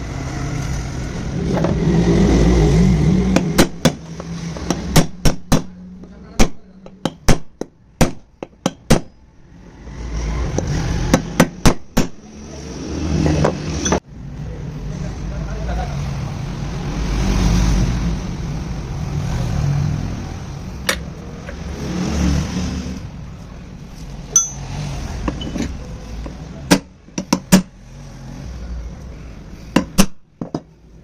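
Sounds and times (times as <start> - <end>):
sharp knocks and clinks: 13.4 - 14.0, 24.3 - 27.7.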